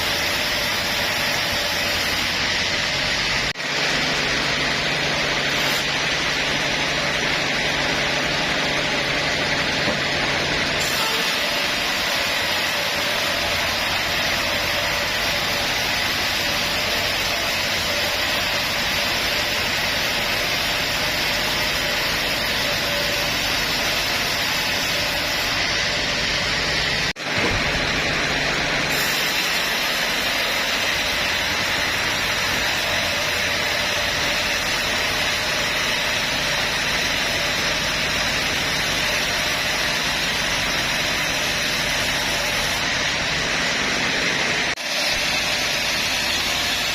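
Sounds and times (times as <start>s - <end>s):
band saw rushing noise: 0.0s - 46.9s.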